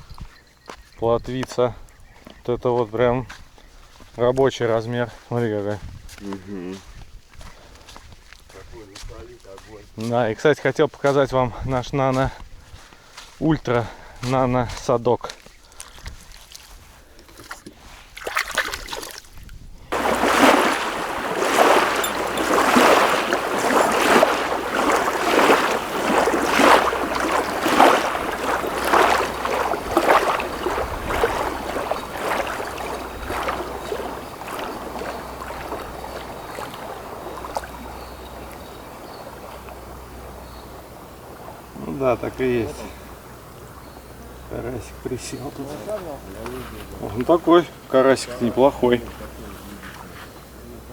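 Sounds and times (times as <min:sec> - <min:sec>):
water splashing: 0:16.3 - 0:50.9.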